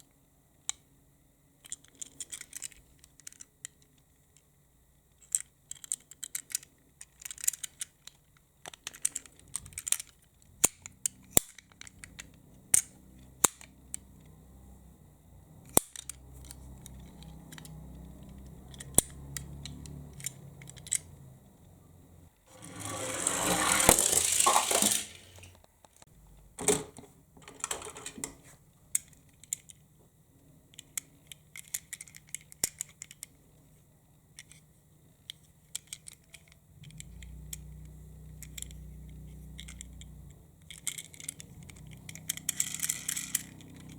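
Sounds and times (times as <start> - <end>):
toy car rolling rattle: 1.6 - 4.0, 5.2 - 13.7, 15.7 - 21.1, 22.4 - 25.6, 27.4 - 28.3, 35.4 - 37.4, 38.4 - 43.9
toy cars clicking and clattering: 1.6 - 14.3, 15.6 - 21.2, 22.5 - 26.1, 27.4 - 29.8, 30.7 - 33.6, 34.3 - 43.9.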